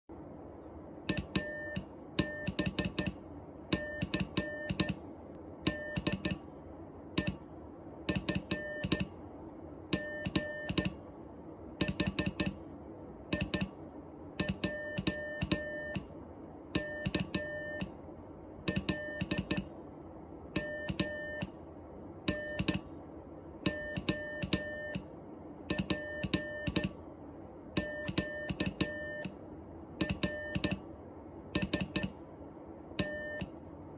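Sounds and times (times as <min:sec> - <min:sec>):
low background hum: 0:00.1 - 0:33.9
morse code beeps: 0:01.1 - 0:05.0, 0:05.6 - 0:06.4, 0:07.1 - 0:09.1, 0:09.9 - 0:11.0, 0:11.8 - 0:12.6, 0:13.3 - 0:13.8, 0:14.4 - 0:16.1, 0:16.7 - 0:18.0, 0:18.6 - 0:19.7, 0:20.5 - 0:21.6, 0:22.2 - 0:22.9, 0:23.6 - 0:25.1, 0:25.7 - 0:27.0, 0:27.8 - 0:29.4, 0:30.0 - 0:30.9, 0:31.5 - 0:32.2, 0:33.0 - 0:33.5.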